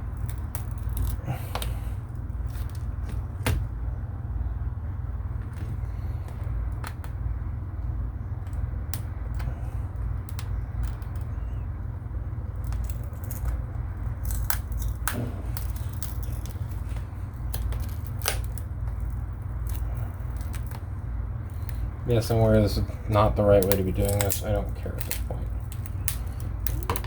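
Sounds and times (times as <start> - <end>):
glass clicks and crackles: 0.0 - 3.6, 8.4 - 11.6, 12.4 - 22.0, 23.6 - 27.0
steady low hum: 0.0 - 27.0.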